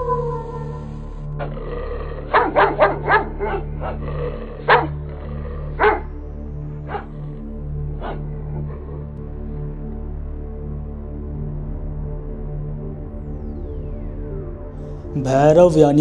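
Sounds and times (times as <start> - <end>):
low musical drone: 0.0 - 16.0
dog barking: 2.2 - 6.0, 6.9 - 7.2, 8.0 - 8.7.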